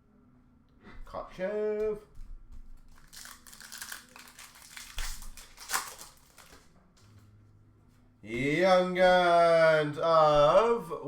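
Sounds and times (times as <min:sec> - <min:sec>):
cards rustling: 0:02.6 - 0:07.2
card wrappers crinkling and tearing: 0:02.7 - 0:07.2.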